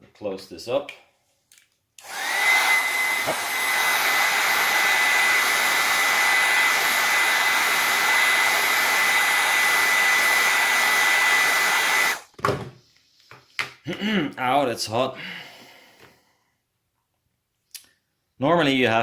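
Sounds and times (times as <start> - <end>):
hot-air blower running: 2.0 - 12.2.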